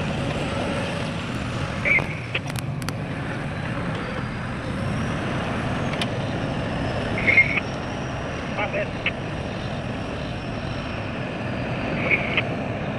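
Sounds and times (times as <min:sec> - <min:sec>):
heavy machinery low rumble: 0:00.0 - 0:12.9
sharp clicks: 0:01.9 - 0:03.0.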